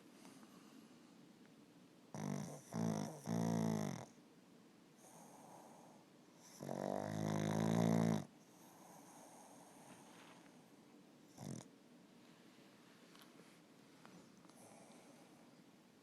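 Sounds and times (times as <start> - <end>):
dog snoring: 2.1 - 4.2, 5.0 - 10.1, 11.3 - 11.7, 14.1 - 15.2.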